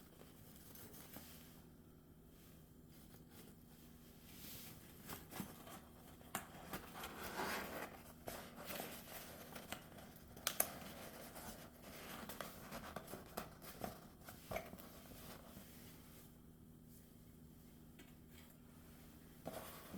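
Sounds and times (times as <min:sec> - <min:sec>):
scratchy rustling: 0:02.9 - 0:16.3.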